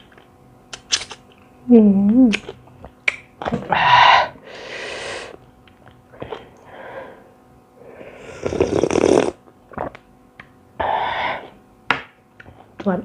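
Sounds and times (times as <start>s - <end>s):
person slurping noodles: 8.0s - 10.0s.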